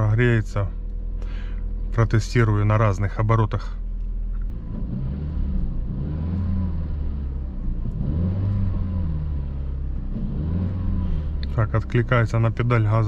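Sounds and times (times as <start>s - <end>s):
car engine revving: 4.0s - 13.0s.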